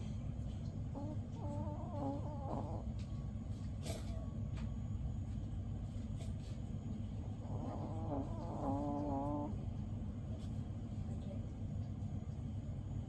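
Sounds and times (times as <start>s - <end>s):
dog snoring: 7.4s - 9.5s.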